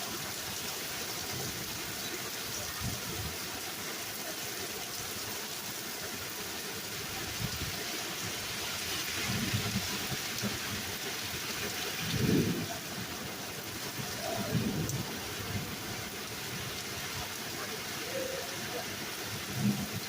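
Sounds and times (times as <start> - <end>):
heavy rain hissing: 0.0 - 20.0.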